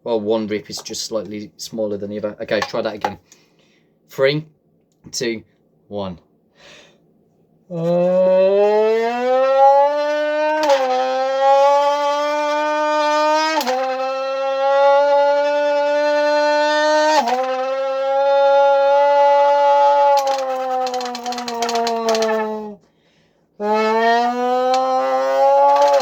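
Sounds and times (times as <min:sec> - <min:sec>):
buzzing tone from blown can: 0:07.7 - 0:22.8, 0:23.6 - 0:26.0.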